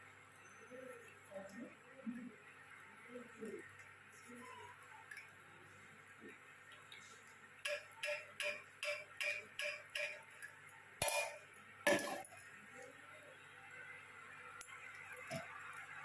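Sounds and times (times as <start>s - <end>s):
spoon clinking against cup: 7.7s - 10.2s.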